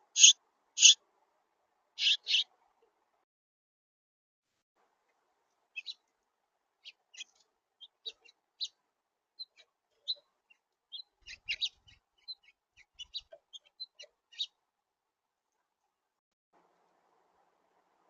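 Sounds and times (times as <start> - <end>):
small birds chirping: 0.0 - 1.0, 2.0 - 2.5, 5.7 - 6.1, 6.8 - 8.8, 9.4 - 14.6.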